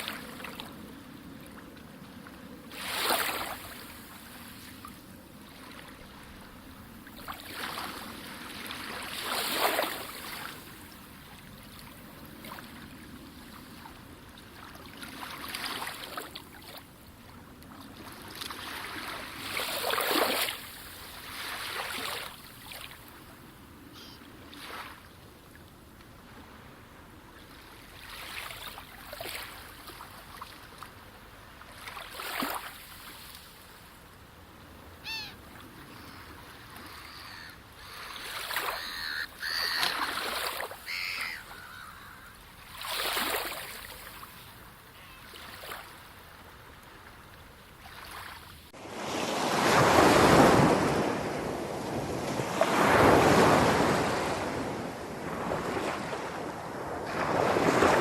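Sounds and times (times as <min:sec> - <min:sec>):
short bird calls: 0:23.9 - 0:24.3, 0:35.0 - 0:42.4
sea waves washing onto shore: 0:47.8 - 0:58.0.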